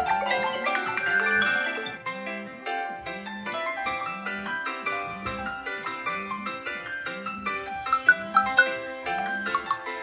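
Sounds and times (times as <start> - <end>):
smartphone ringtone melody: 0.0 - 2.1, 7.9 - 10.0.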